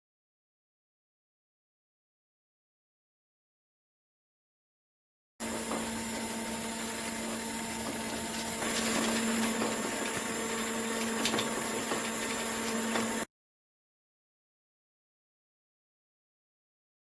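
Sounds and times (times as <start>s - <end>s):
machine hum: 5.4s - 13.3s.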